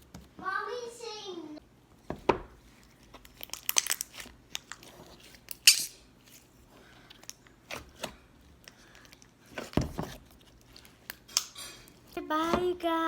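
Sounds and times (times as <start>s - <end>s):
small objects clicking and knocking: 3.3s - 4.8s, 5.5s - 6.0s.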